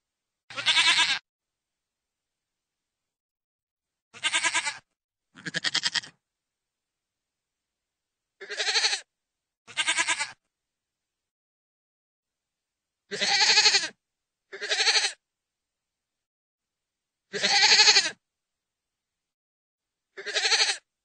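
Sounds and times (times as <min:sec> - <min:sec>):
goat bleating: 0:00.5 - 0:01.2, 0:04.1 - 0:06.2, 0:08.4 - 0:09.1, 0:09.7 - 0:10.4, 0:13.1 - 0:15.2, 0:17.3 - 0:18.2, 0:20.2 - 0:20.9.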